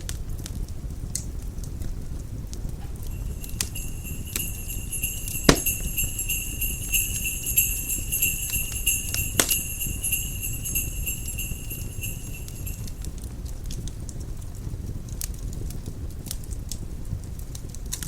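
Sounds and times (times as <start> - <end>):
sleigh bells jingling: 3.1 - 13.0.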